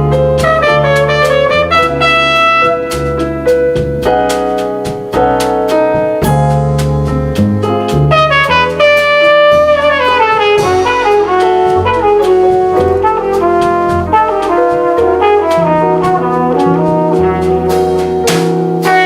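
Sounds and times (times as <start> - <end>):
double bass: 0.0 - 19.0
drums: 0.0 - 19.0
piano: 0.0 - 19.0
brass horn melody: 0.1 - 3.6, 8.1 - 19.0.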